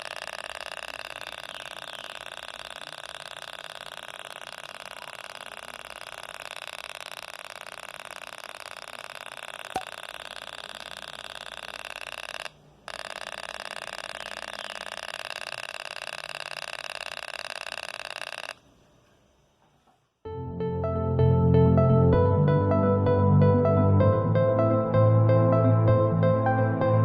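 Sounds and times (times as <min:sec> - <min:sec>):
sharp click: 0:00.0 - 0:18.6
rattling electronic buzz: 0:00.0 - 0:18.8.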